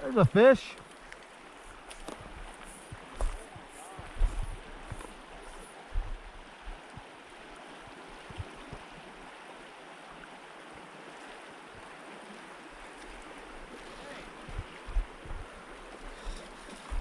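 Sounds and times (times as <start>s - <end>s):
stream water running: 0.0s - 17.0s
soft low thumps: 1.6s - 7.0s, 14.4s - 17.0s.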